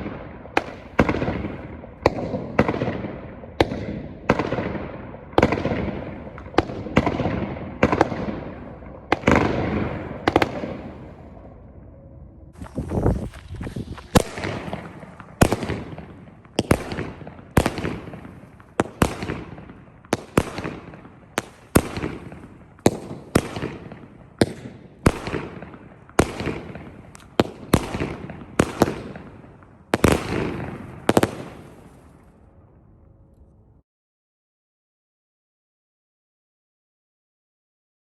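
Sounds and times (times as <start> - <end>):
firework shots thumping: 0.0 - 11.4, 12.6 - 32.1
firework crackle: 12.6 - 32.3.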